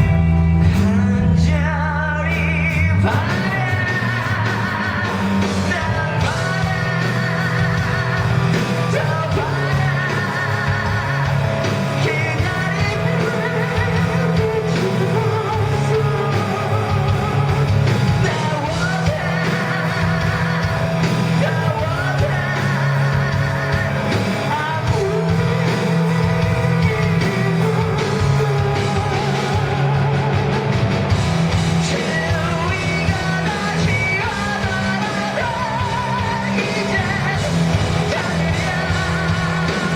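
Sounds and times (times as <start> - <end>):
live rock band playing: 0.0 - 39.9.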